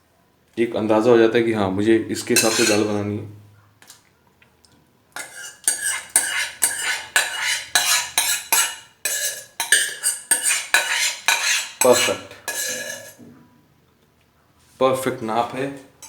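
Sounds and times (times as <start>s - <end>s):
metal spoon scraping steel pot: 2.1s - 3.0s, 5.2s - 13.2s.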